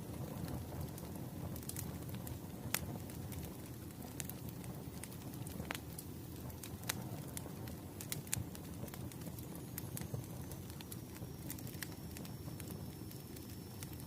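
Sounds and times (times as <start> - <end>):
fire flames rumbling: 0.0 - 14.0
logs crackling and popping: 0.0 - 14.0.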